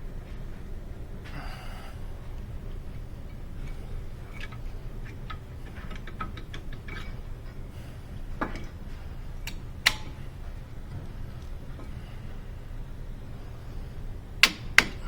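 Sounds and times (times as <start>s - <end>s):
steady low hum: 0.0s - 15.0s
metal tools clicking and clinking: 3.2s - 7.6s.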